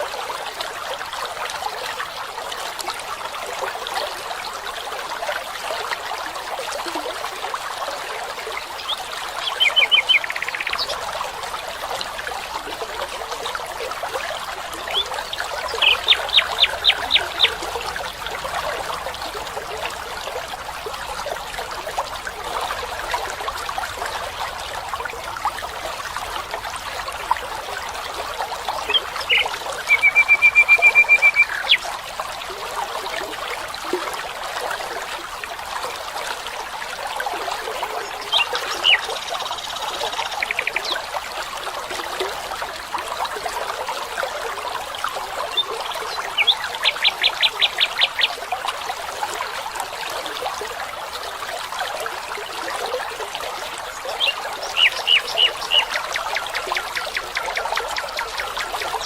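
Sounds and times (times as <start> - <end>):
stream trickling: 0.0 - 59.0.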